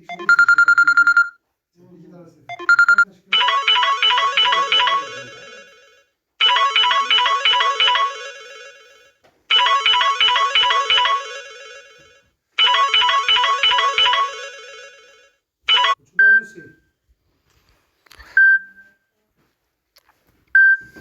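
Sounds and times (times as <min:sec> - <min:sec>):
phone ringtone melody: 0:00.0 - 0:01.4, 0:02.5 - 0:16.0.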